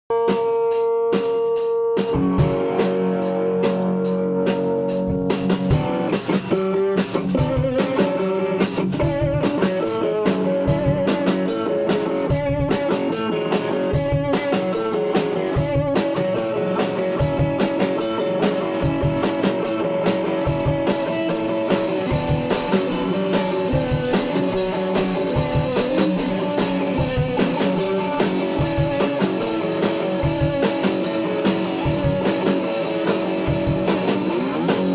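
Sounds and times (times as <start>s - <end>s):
held guitar note: 0.1s - 34.9s
out of tune blues-rock band: 0.1s - 34.9s
steady drum beat: 0.1s - 34.9s.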